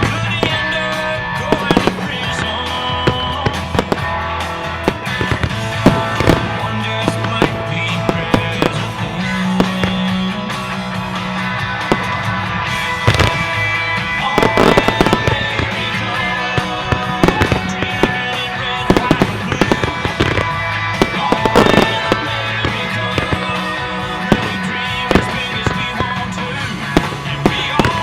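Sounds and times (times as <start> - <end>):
fireworks bangs and crackles: 0.0 - 28.0
guitar-driven music: 0.0 - 28.0.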